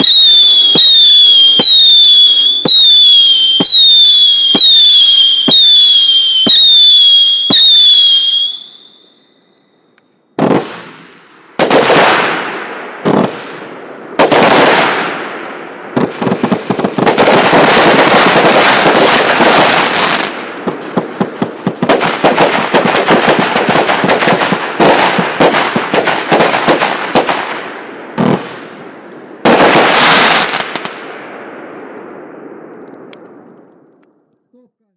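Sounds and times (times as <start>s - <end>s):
rapid crackling firework shots: 0.0s - 8.3s, 10.4s - 31.6s
firework bangs: 0.0s - 9.0s, 10.4s - 33.5s
firework shots with falling whistle: 0.0s - 9.8s.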